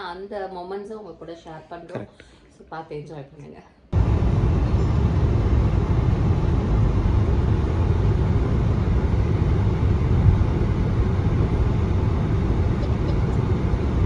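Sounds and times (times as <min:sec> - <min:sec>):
car driving low rumble: 0:04.0 - 0:14.0.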